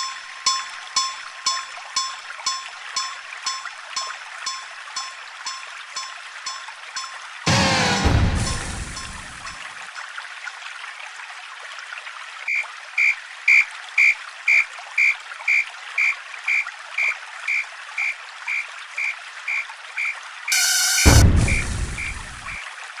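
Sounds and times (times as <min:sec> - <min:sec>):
level crossing warning bell: 0:00.0 - 0:09.6.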